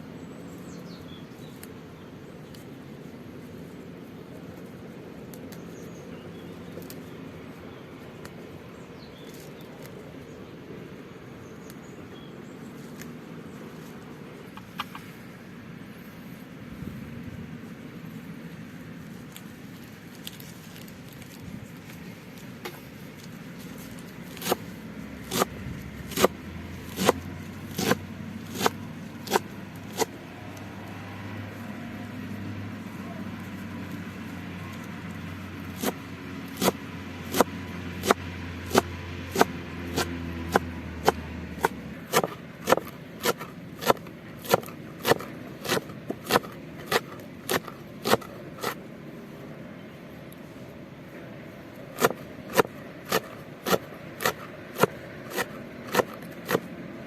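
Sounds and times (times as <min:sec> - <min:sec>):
knife chopping on cutting board: 0:26.9 - 0:30.1.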